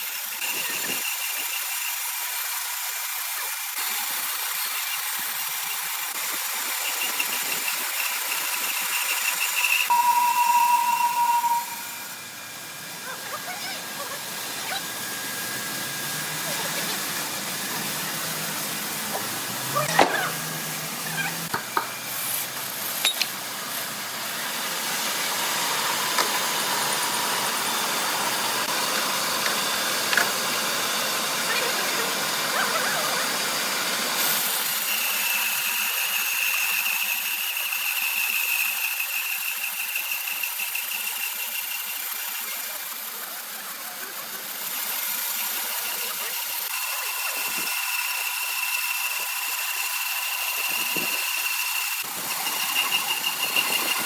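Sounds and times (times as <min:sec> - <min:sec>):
sawmill machinery running: 0:00.0 - 0:54.0
high steady whine: 0:06.1 - 0:32.1.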